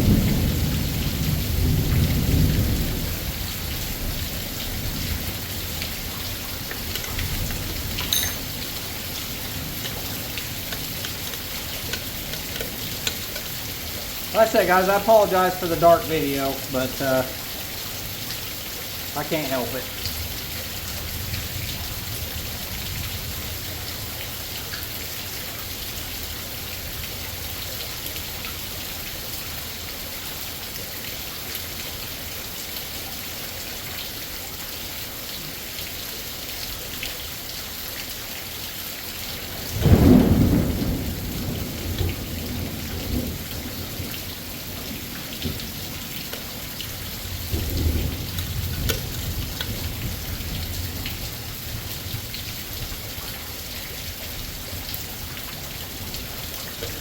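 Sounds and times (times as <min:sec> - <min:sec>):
thunder crack and rumble: 0:00.0 - 0:08.0, 0:39.6 - 0:46.5, 0:47.2 - 0:53.1
steady rain: 0:00.0 - 0:57.0.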